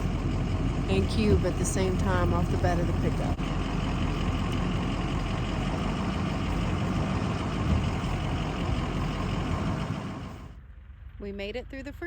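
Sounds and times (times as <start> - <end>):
truck engine running: 0.0 - 12.0.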